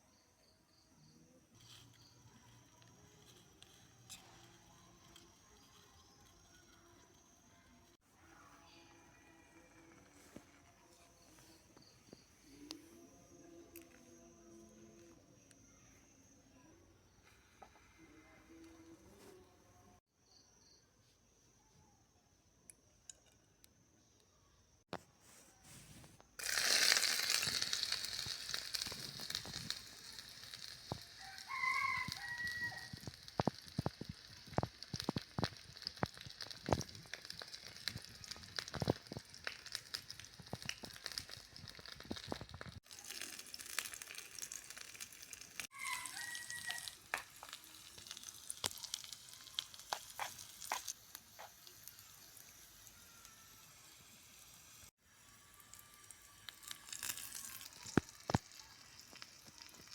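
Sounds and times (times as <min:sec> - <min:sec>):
crackling oil pops: 0:26.4 - 0:45.7, 0:46.8 - 0:51.5, 0:56.6 - 0:59.9
food sizzling in oil: 0:26.4 - 0:59.9.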